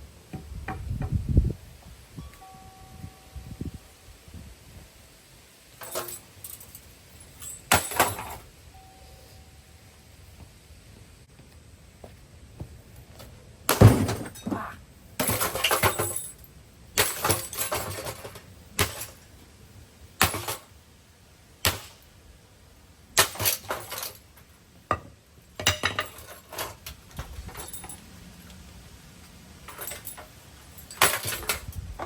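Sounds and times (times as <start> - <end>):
broken parts clattering and clinking: 5.8 - 8.5, 13.2 - 19.4, 20.2 - 20.7, 23.2 - 28.6, 29.6 - 32.0.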